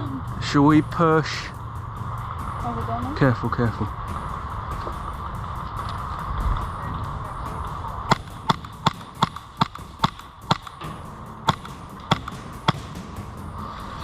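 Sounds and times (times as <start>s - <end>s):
airsoft gun shots: 8.1s - 13.0s.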